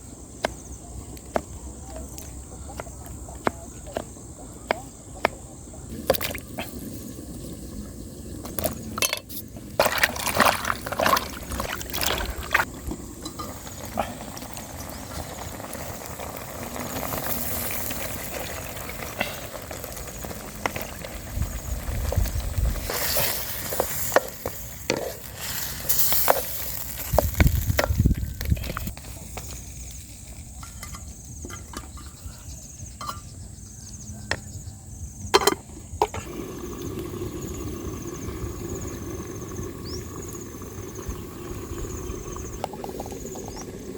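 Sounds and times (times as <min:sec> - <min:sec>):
liquid splashing and pouring: 0:09.8 - 0:12.7.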